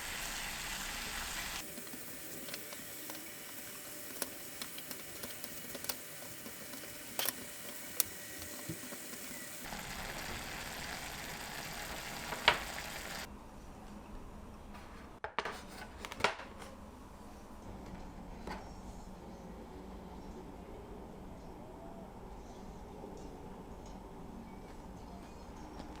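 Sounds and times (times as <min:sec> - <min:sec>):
steady cooking hiss: 0:00.0 - 0:13.3.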